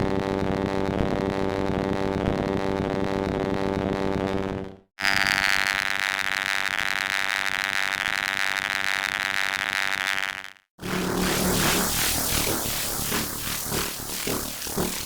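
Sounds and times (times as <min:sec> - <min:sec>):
high-pitched electric buzz: 0:05.0 - 0:15.0
crackling hum: 0:05.5 - 0:15.0.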